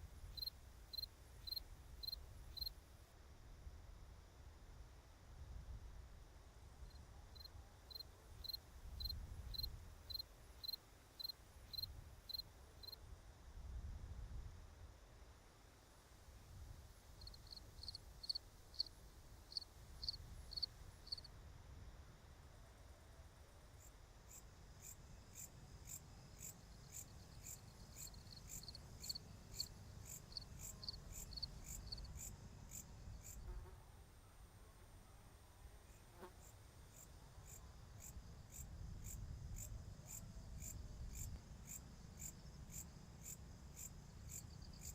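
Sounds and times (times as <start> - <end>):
insect chirping: 0.2 - 2.8, 6.8 - 13.0, 17.1 - 21.3, 23.8 - 33.5, 35.9 - 44.9.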